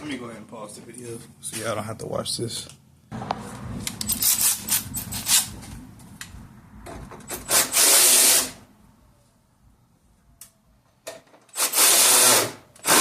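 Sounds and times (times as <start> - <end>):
loud rasping burst: 7.3 - 8.7, 11.5 - 13.0.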